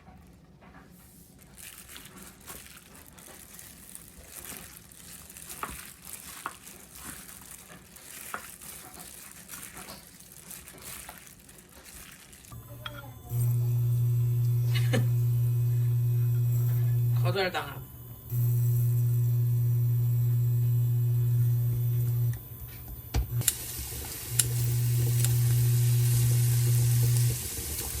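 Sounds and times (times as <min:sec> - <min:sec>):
sizzling hiss: 0:12.4 - 0:28.0
loud low hum: 0:12.6 - 0:23.5.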